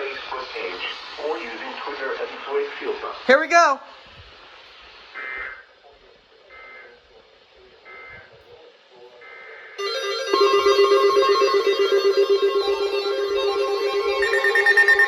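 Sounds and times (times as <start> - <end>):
faint data tone bursts: 9.8 - 15.0
pulsing electronic alert alarm: 9.8 - 15.0.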